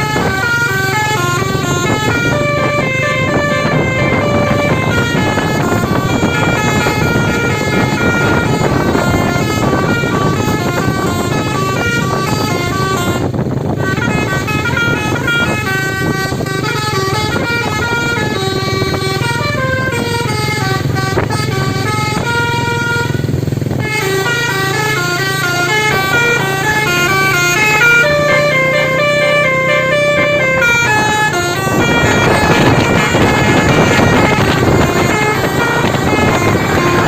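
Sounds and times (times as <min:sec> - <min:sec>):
bus engine running: 0:00.0 - 0:37.0
multi-tone bus air horns: 0:00.0 - 0:37.0.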